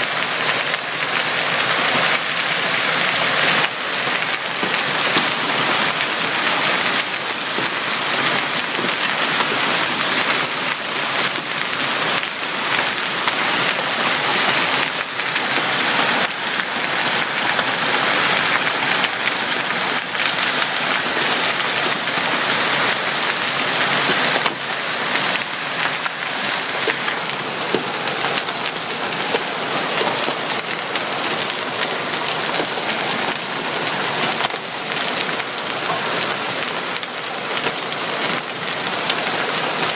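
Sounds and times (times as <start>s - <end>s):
hailstones pounding: 0.0s - 39.9s
rain: 0.0s - 39.9s.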